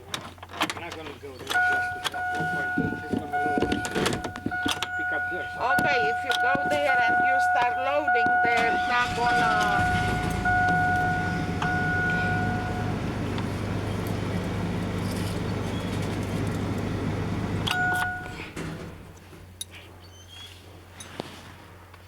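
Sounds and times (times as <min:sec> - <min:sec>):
van engine running: 0:00.0 - 0:20.0
clicks: 0:00.9 - 0:16.9
electronic warning tone: 0:01.6 - 0:13.9, 0:17.7 - 0:18.5.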